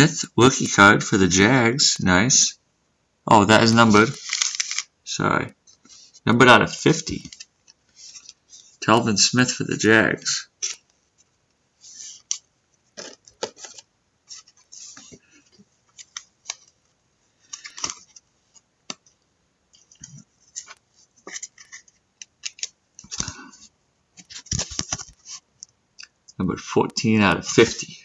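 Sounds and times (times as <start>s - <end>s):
trading cards clicking and rustling: 3.6s - 4.9s, 6.7s - 9.6s, 12.1s - 16.8s, 17.4s - 19.2s, 19.8s - 23.6s, 24.2s - 25.4s.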